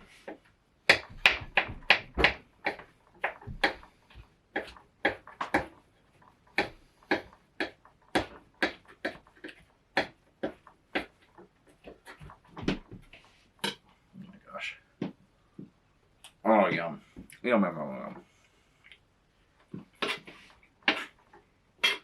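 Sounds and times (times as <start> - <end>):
knife chopping on cutting board: 0.9 - 3.9, 4.5 - 5.7.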